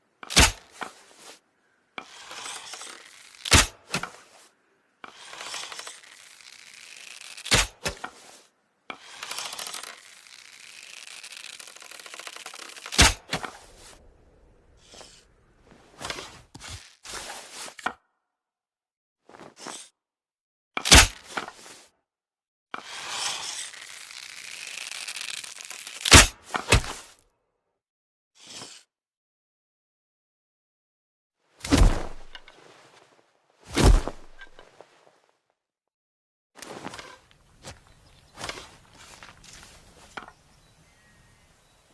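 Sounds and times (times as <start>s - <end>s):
bowstring draw scraping: 2.0s - 14.1s, 14.7s - 17.9s, 22.8s - 27.2s, 28.4s - 28.9s, 36.6s - 40.8s
bowstring snapping: 2.4s - 4.2s, 5.1s - 8.2s.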